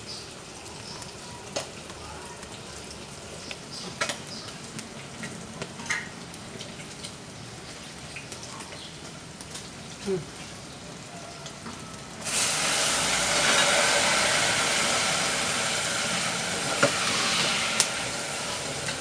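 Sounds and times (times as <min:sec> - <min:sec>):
firewood crackling in a stove: 0:00.0 - 0:19.0
soft fire hiss: 0:12.2 - 0:19.0.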